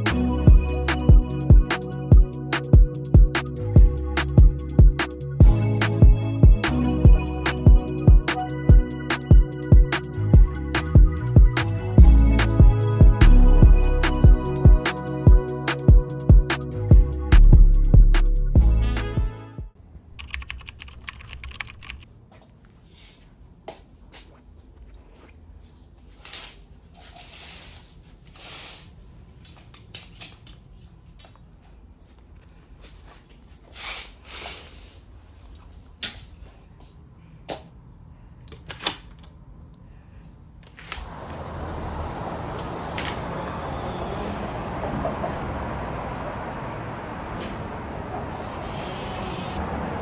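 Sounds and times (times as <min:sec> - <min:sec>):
background music with a beat: 0:00.0 - 0:19.8
soft rustles: 0:22.2 - 0:29.8, 0:30.4 - 0:37.0.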